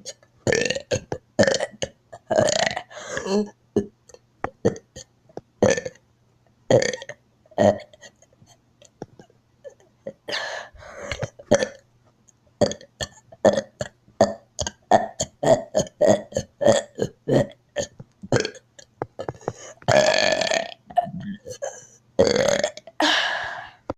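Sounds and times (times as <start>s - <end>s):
child burping: 0.0s - 3.9s, 6.7s - 8.1s, 9.7s - 11.8s, 12.6s - 23.2s.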